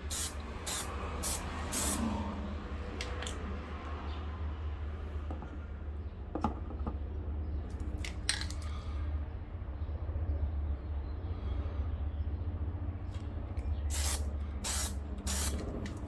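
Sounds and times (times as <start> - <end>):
aerosol spray hiss: 0.0 - 2.0, 13.9 - 15.6.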